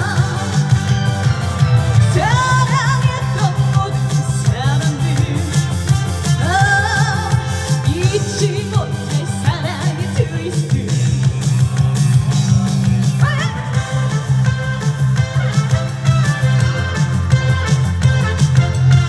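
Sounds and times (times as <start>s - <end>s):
woman singing: 0.0s - 1.0s, 2.0s - 11.2s, 13.2s - 14.3s
amplified backing music with beat: 0.0s - 19.0s.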